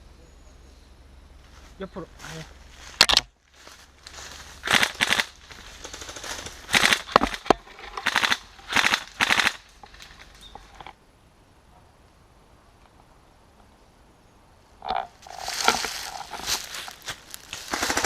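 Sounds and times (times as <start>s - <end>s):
airsoft guns firing bursts: 4.6s - 7.4s, 8.0s - 9.6s, 17.6s - 18.0s.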